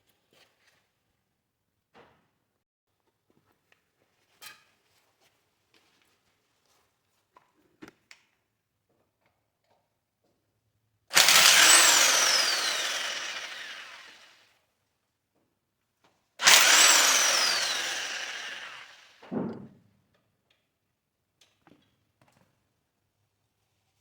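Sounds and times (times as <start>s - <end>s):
power tool whining: 11.1s - 14.4s, 16.4s - 19.3s.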